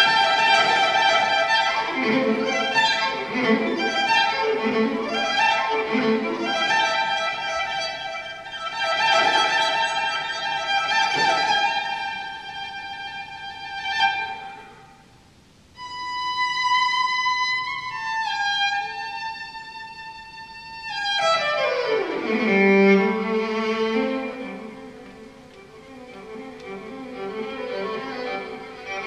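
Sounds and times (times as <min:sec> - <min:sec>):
solo violin playing: 0:00.0 - 0:15.1, 0:15.8 - 0:29.0.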